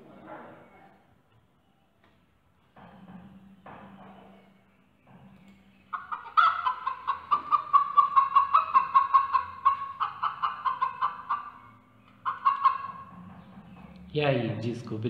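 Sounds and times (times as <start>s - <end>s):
hen cackling: 5.9s - 14.0s.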